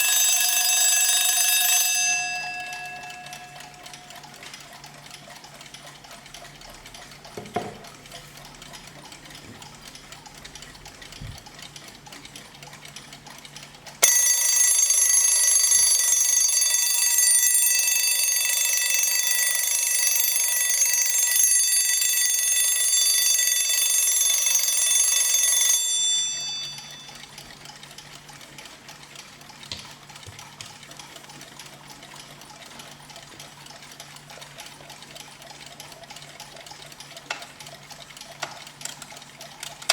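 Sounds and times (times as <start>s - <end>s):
alarm clock bell ringing: 0.0s - 5.1s, 14.0s - 27.3s.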